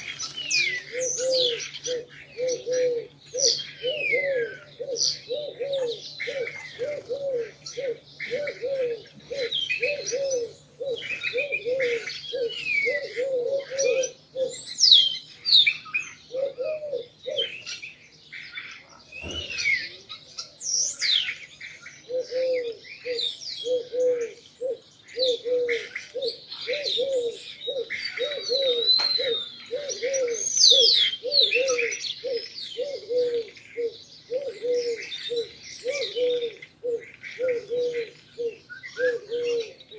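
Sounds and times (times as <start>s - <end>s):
pigeons cooing: 0.0s - 39.9s
small birds chirping and whistling: 0.0s - 39.9s
low thump: 19.2s - 19.7s.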